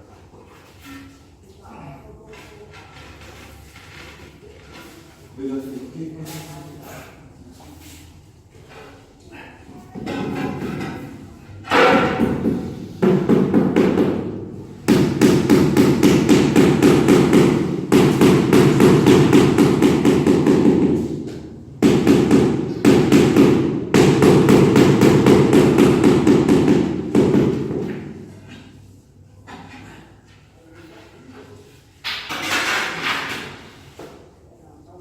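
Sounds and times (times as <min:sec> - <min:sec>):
rapid repeated hammering: 0:11.6 - 0:28.1.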